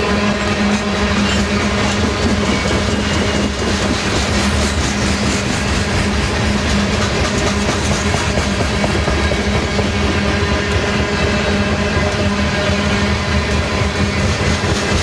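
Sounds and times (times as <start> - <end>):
freight train rumbling past: 0.0 - 15.0
wheels clicking over rails: 0.6 - 10.6, 13.5 - 15.0.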